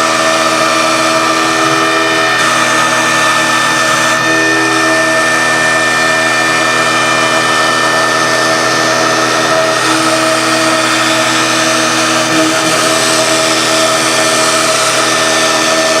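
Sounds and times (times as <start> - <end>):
cnc router cutting board: 0.0 - 16.0.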